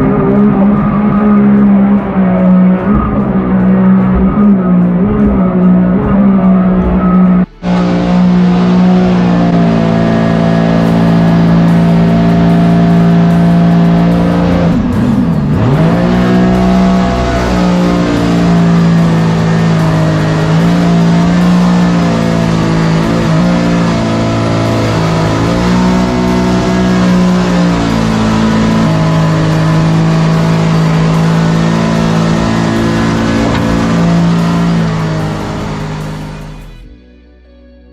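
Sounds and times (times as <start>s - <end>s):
jet boat engine revving: 0.0s - 36.9s
music with held chords: 0.0s - 37.9s.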